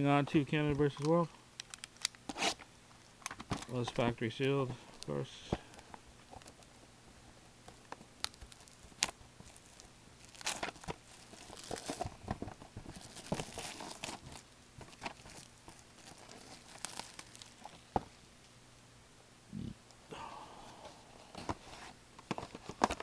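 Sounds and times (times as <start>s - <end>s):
plastic wrapping tearing and crinkling: 1.6s - 3.8s, 8.2s - 18.0s.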